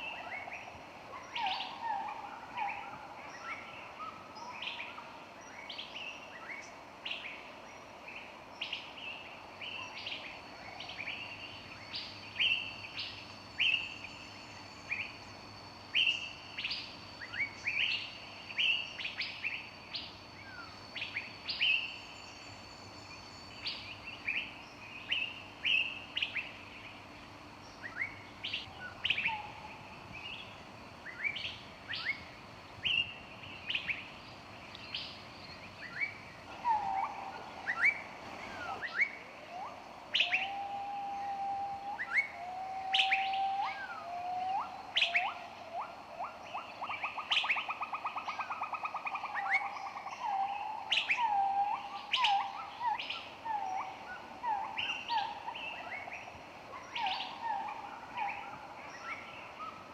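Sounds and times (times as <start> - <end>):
songbirds chirping: 0.0 - 59.9.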